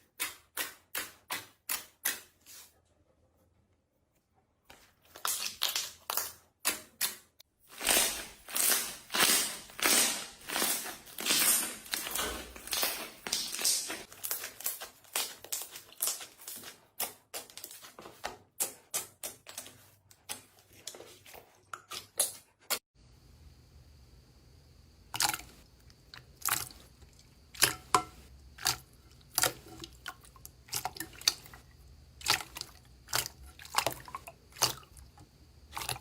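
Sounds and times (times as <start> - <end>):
slime squishing by hand: 4.7 - 22.8.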